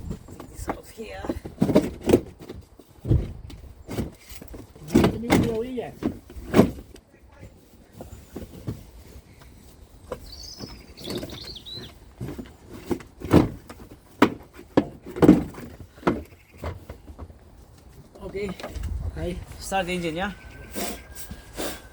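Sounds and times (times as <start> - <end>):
knocks and clunks on engine: 0.0 - 7.0, 10.1 - 17.4
bird chirping: 9.9 - 12.1, 16.2 - 16.7, 19.6 - 21.9.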